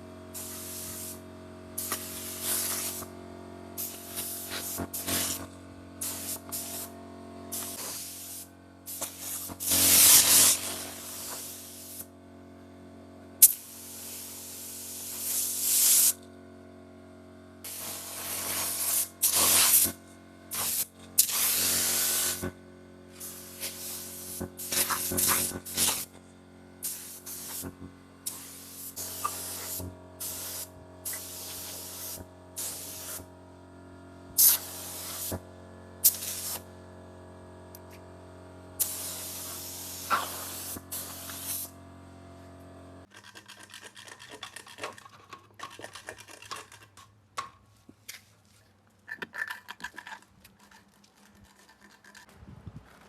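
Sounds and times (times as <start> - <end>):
compressed air spraying: 0.4 - 1.2, 1.8 - 3.1, 3.8 - 12.1, 13.4 - 16.2, 17.6 - 26.1, 26.8 - 33.3, 34.4 - 35.4, 36.0 - 36.7, 38.8 - 41.7
faint clicks and scrapes: 47.9 - 53.0.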